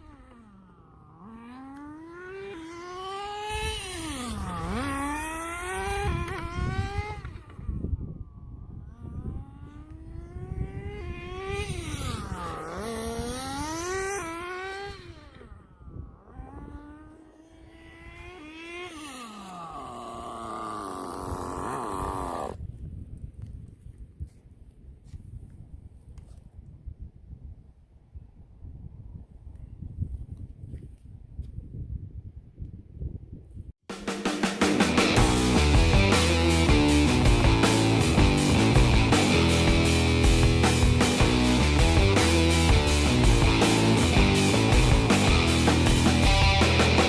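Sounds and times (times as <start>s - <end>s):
rc car engine buzzing: 0.0s - 7.8s, 8.8s - 22.6s.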